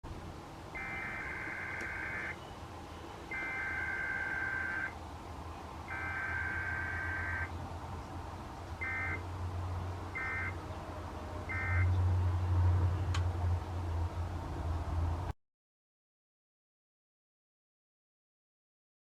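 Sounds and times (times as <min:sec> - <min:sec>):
low radio hum: 0:00.1 - 0:08.1
short data bursts: 0:00.7 - 0:02.5, 0:03.3 - 0:05.0, 0:05.9 - 0:07.5, 0:08.8 - 0:09.2, 0:10.2 - 0:10.6, 0:11.5 - 0:11.9
buzzy two-pitch data bursts: 0:00.8 - 0:02.4, 0:03.3 - 0:04.9, 0:05.9 - 0:07.5.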